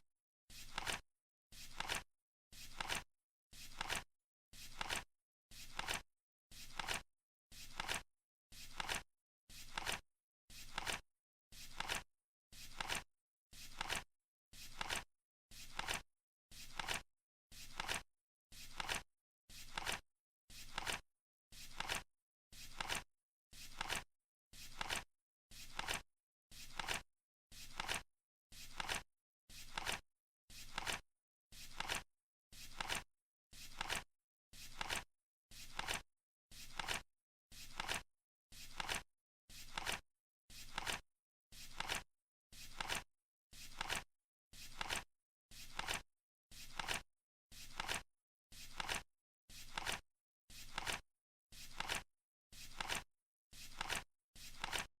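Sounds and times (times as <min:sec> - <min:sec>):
flip clock cards flapping: 0:00.7 - 0:01.0, 0:01.7 - 0:02.0, 0:02.7 - 0:03.0, 0:03.7 - 0:04.0, 0:04.7 - 0:05.0, 0:05.7 - 0:06.0, 0:06.7 - 0:07.0, 0:07.7 - 0:08.0, 0:08.7 - 0:09.0, 0:09.7 - 0:10.0, 0:10.7 - 0:11.0, 0:11.7 - 0:12.0, 0:12.7 - 0:13.0, 0:13.7 - 0:14.0, 0:14.7 - 0:15.0, 0:15.7 - 0:16.0, 0:18.7 - 0:19.0, 0:19.7 - 0:20.0, 0:20.7 - 0:21.0, 0:21.7 - 0:22.0, 0:22.7 - 0:23.0, 0:23.7 - 0:24.0, 0:24.7 - 0:25.0, 0:25.7 - 0:26.0, 0:26.7 - 0:27.0, 0:27.7 - 0:28.0, 0:28.7 - 0:29.0, 0:29.7 - 0:30.0, 0:30.7 - 0:31.0, 0:31.7 - 0:32.0, 0:32.7 - 0:33.0, 0:33.7 - 0:34.0, 0:34.7 - 0:35.0, 0:35.7 - 0:36.0, 0:36.7 - 0:37.0, 0:37.7 - 0:38.0, 0:38.7 - 0:39.0, 0:39.7 - 0:40.0, 0:40.7 - 0:41.0, 0:41.7 - 0:42.0, 0:42.7 - 0:43.0, 0:43.7 - 0:44.0, 0:44.7 - 0:45.0, 0:45.7 - 0:46.0, 0:46.7 - 0:47.0, 0:47.7 - 0:48.0, 0:48.7 - 0:49.0, 0:49.7 - 0:50.0, 0:50.7 - 0:51.0, 0:51.7 - 0:52.0, 0:52.7 - 0:53.0, 0:53.7 - 0:54.0, 0:54.6 - 0:54.9.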